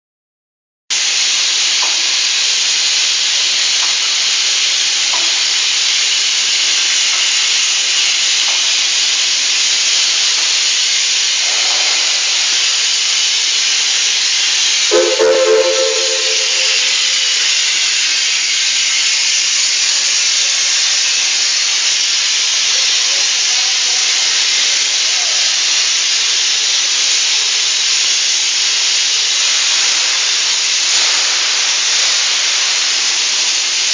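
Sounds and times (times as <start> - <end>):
brief low tone: 14.9 - 16.9.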